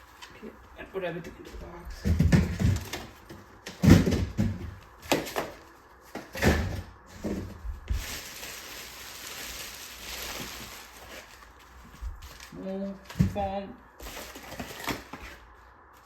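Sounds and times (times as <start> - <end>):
cardboard box knocks and thuds: 2.0 - 5.6
scraping rustle of packing: 7.1 - 13.2, 14.0 - 16.0.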